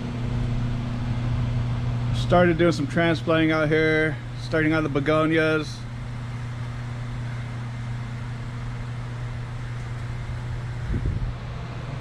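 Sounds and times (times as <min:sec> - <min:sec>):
mechanical hum: 0:00.0 - 0:12.0.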